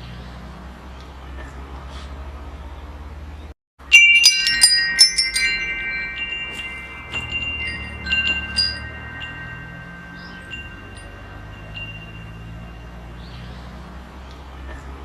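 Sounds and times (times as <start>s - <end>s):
wind chimes ringing: 3.8s - 14.0s.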